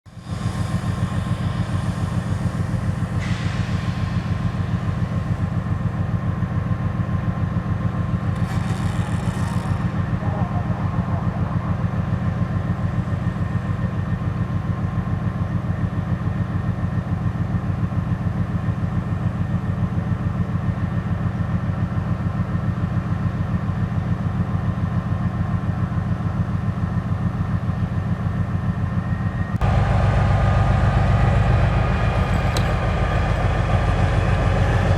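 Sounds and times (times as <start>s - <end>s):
locomotive diesel engine throbbing: 0.1s - 17.6s, 28.3s - 34.9s
brief hissing: 0.4s - 5.4s.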